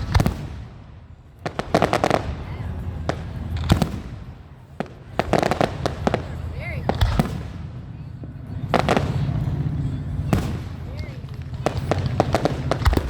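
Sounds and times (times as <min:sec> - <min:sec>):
crackling firework bursts: 0:00.0 - 0:13.0
firework bang: 0:11.4 - 0:13.0.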